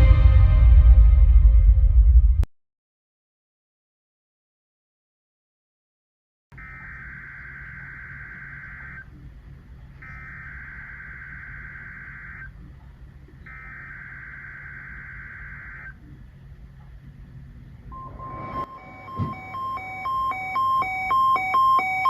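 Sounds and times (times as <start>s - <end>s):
steady low hum: 6.6s - 22.0s.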